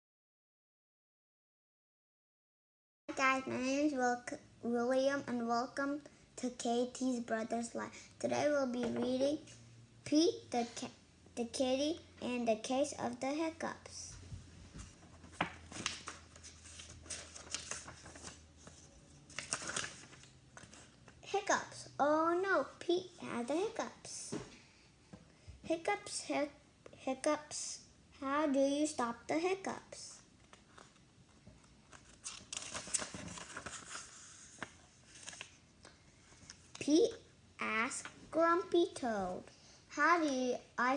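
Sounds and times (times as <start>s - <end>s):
book pages rustling: 14.2s - 21.2s, 30.2s - 36.8s.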